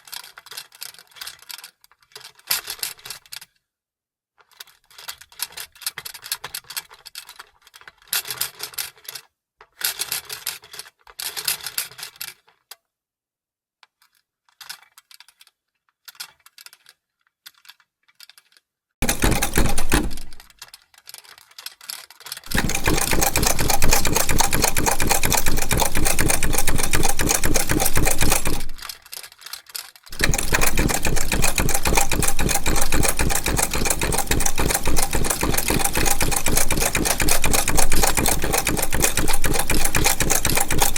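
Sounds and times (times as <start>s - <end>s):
sewing machine clicking: 19.0s - 20.6s, 22.4s - 29.2s, 30.1s - 40.9s.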